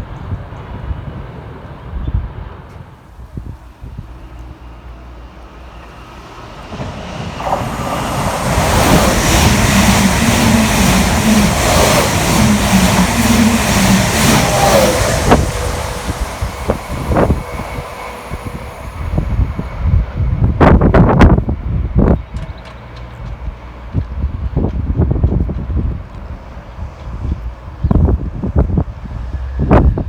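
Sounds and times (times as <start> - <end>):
train passing at speed: 0.0 - 30.0.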